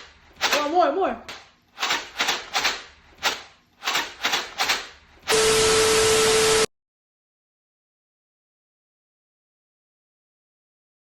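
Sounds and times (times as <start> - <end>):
loud steady hiss with hum: 5.3 - 6.7
short sharp noisy bursts: 5.3 - 6.7.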